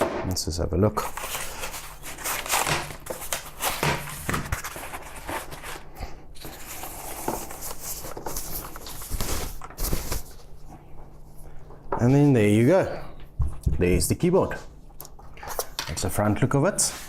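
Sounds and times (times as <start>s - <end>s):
packaging rustling and scraping: 1.0s - 10.7s.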